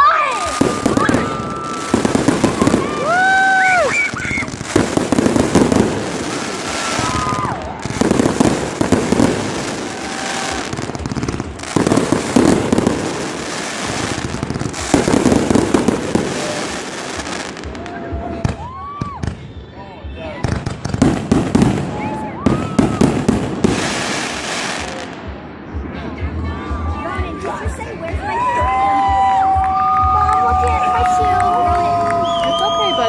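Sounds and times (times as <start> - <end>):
fireworks whistling: 0.0 - 17.8, 18.4 - 25.1, 32.1 - 33.0
fireworks crackling and popping: 0.0 - 19.7, 20.3 - 25.5, 29.1 - 33.0.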